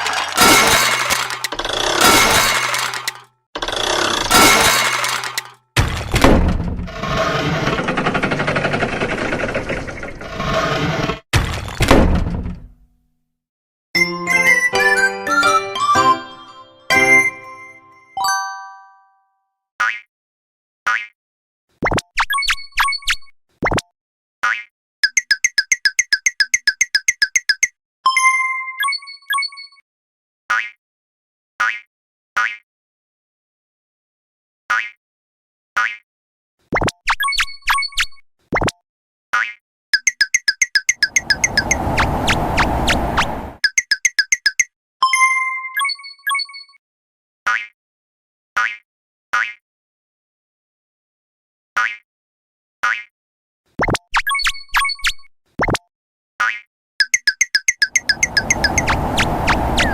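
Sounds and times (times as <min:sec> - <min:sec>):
fast rattling noise: 0:00.0 - 0:10.6
fast repeated electronic tones: 0:40.0 - 0:44.7, 0:57.0 - 0:59.9
short electronic blips: 0:40.2 - 0:44.6, 0:57.0 - 0:59.9.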